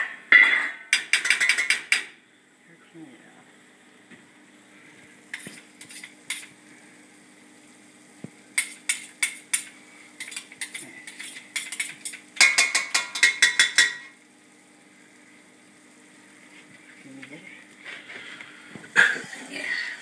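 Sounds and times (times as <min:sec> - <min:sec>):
utensil scraping cookware: 0:05.3 - 0:06.5, 0:08.6 - 0:14.1.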